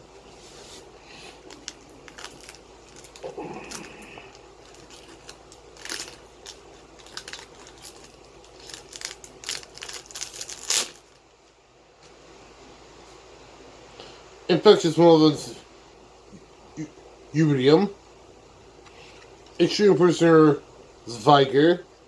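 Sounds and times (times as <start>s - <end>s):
foil pack crinkling and tearing: 1.1s - 11.3s.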